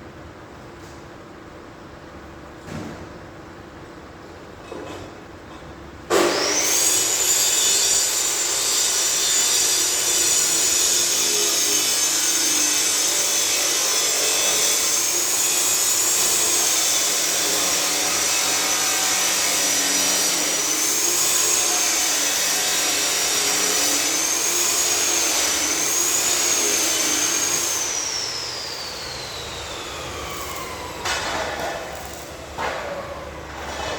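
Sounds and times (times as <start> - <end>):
angle grinder on metal: 6.2 - 32.5.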